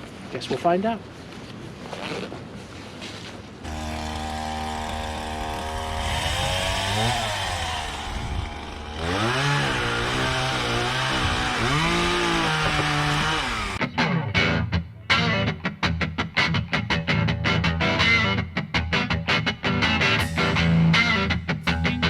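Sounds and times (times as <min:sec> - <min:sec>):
chainsaw engine revving: 0:03.7 - 0:13.8.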